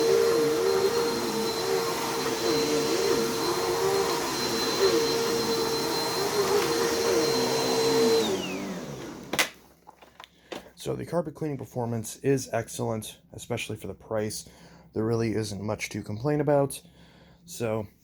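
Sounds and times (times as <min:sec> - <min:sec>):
vacuum cleaner whine: 0:00.0 - 0:09.7.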